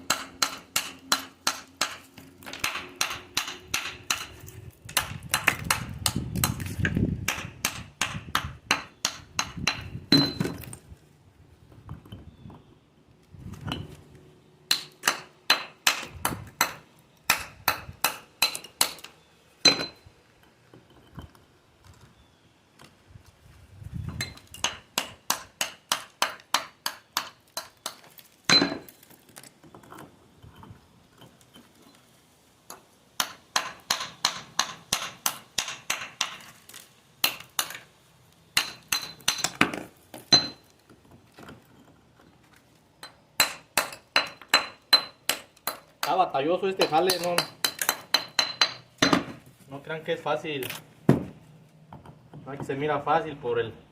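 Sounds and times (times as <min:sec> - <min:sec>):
metal tool tapping on stone: 0:38.6 - 0:40.6, 0:46.8 - 0:49.3.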